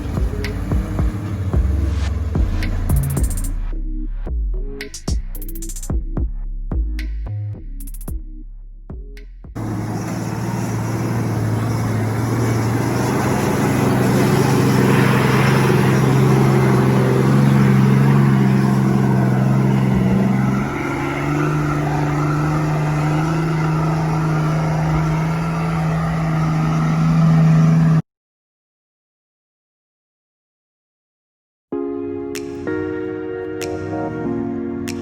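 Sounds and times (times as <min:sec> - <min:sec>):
off-road vehicle engine under load: 0:00.0 - 0:03.6, 0:09.5 - 0:28.0.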